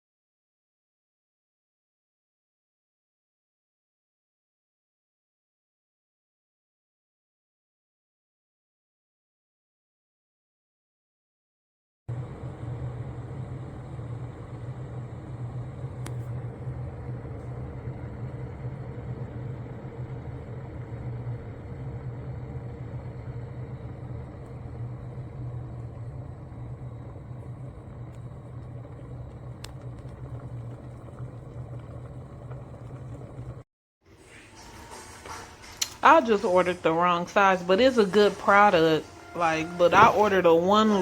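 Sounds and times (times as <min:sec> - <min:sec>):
electric kettle heating water: 0:12.1 - 0:41.0.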